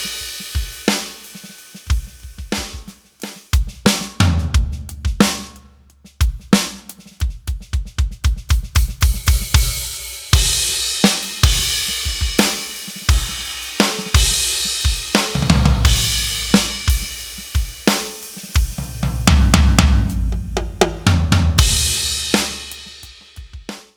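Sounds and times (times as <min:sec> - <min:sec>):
electronic drum kit groove: 0:00.0 - 0:23.9
heavy low drum hits: 0:04.2 - 0:05.5, 0:15.4 - 0:17.4, 0:18.7 - 0:22.8
crash cymbal hits: 0:15.9 - 0:17.4.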